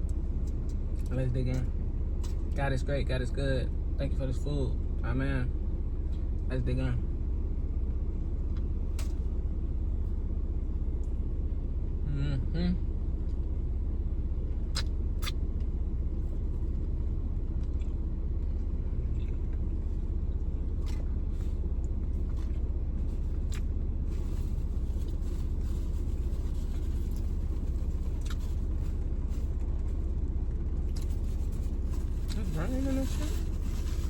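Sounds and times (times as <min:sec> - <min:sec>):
eating with crinkling clicks: 0:00.0 - 0:02.6, 0:17.5 - 0:23.8, 0:24.4 - 0:32.4
steady low rumble: 0:00.0 - 0:34.0.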